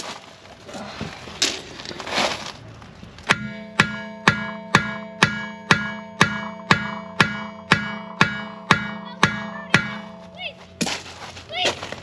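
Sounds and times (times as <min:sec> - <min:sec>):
steady knocking beat: 0:03.3 - 0:10.9.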